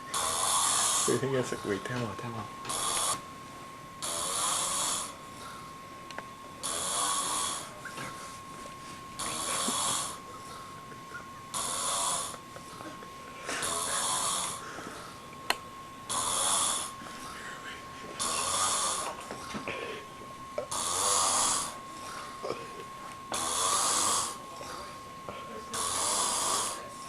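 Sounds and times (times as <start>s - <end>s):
man snoring: 0.1s - 1.2s, 2.7s - 3.2s, 4.0s - 5.6s, 6.6s - 7.8s, 9.2s - 10.8s, 11.5s - 12.8s, 13.4s - 15.2s, 16.1s - 20.0s, 20.6s - 24.9s, 25.7s - 26.9s
faint steady high tone: 7.2s - 11.8s.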